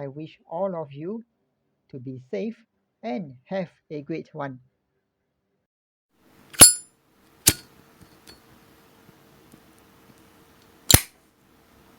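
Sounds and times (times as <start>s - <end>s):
lighter lid clinking open: 6.6s - 6.8s, 7.5s - 8.4s, 10.9s - 11.1s
sharp lighter click: 6.6s - 6.8s, 10.9s - 11.1s
lighter lid snapping shut: 7.5s - 8.3s, 10.9s - 11.1s.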